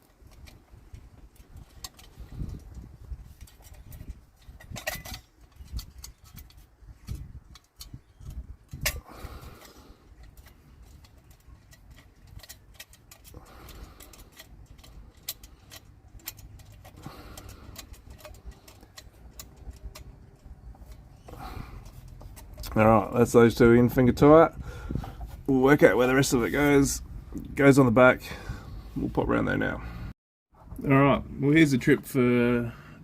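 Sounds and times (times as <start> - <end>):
small metallic clicks and taps: 9.6 - 22.8.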